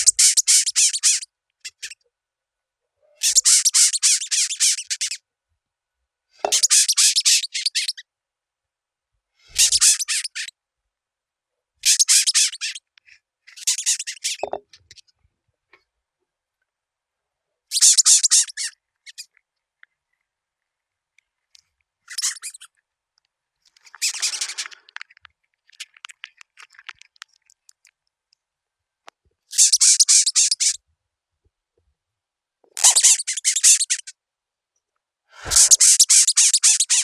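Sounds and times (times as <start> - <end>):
beetle raspy squeaking: 0.0 - 2.0, 3.2 - 5.2, 6.5 - 8.0, 9.5 - 10.5, 11.8 - 12.8, 13.5 - 14.6, 17.7 - 19.3, 22.1 - 22.7, 23.9 - 24.7, 29.5 - 30.8, 32.8 - 34.1, 35.5 - 37.0
faint clicks: 22.6 - 28.4.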